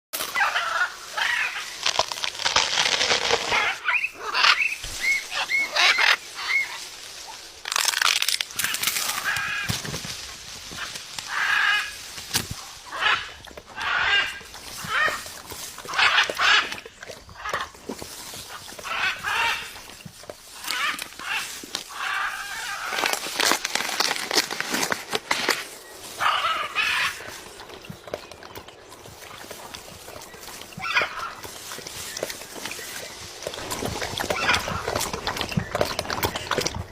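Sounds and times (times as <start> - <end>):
bird calling: 0.3 - 6.9, 25.7 - 36.9.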